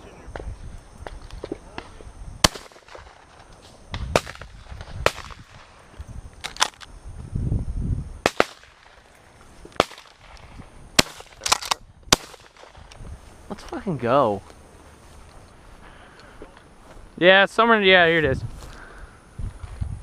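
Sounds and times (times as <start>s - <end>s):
shotguns firing: 1.4s - 5.7s, 8.2s - 9.1s, 9.8s - 12.8s.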